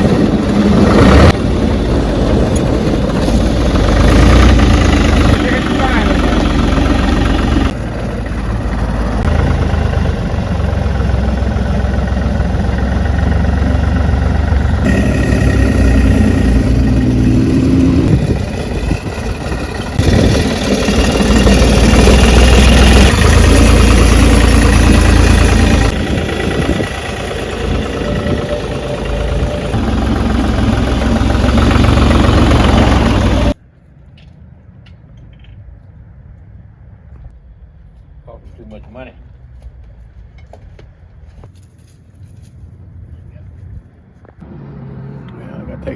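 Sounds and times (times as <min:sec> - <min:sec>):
trencher engine running: 0:00.0 - 0:33.6.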